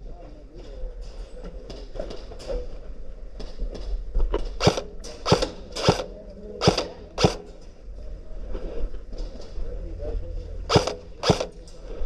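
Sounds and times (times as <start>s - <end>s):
airsoft rifle shots: 4.6s - 7.6s, 10.7s - 11.7s.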